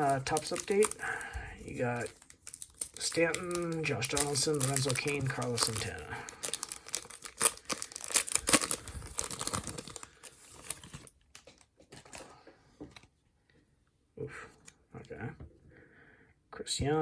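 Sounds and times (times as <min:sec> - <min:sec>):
wrapper tearing and crinkling: 0:00.0 - 0:12.3.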